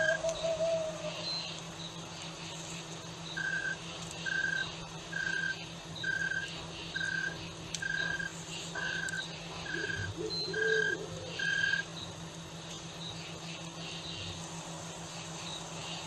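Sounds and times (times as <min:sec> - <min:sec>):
insects buzzing: 0:00.0 - 0:16.0
whistle-like night animal call: 0:07.0 - 0:11.8.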